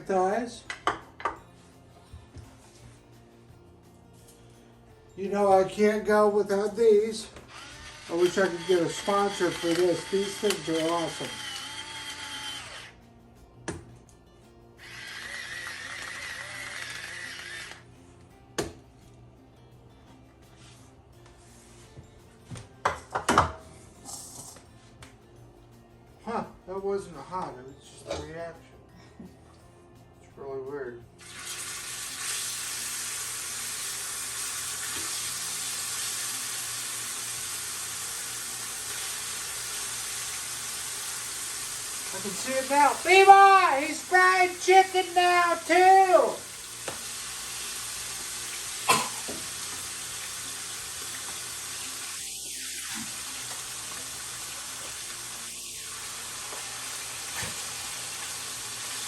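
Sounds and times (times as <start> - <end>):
small electric motor whining: 7.5 - 13.0, 14.8 - 17.9
chicken sizzling in hot oil: 7.6 - 12.0, 31.2 - 44.8, 46.2 - 59.0.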